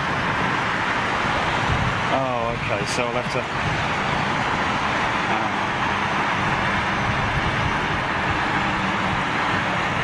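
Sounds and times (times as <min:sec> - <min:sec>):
distant engines roaring: 0:00.0 - 0:10.0.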